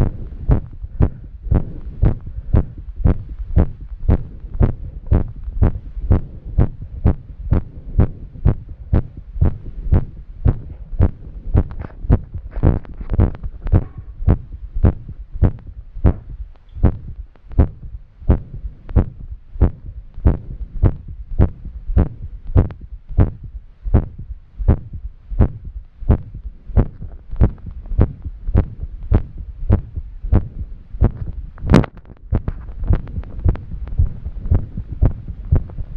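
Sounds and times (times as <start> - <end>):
soft breathing hiss: 0.0 - 31.6
heart beating fast: 0.0 - 35.9.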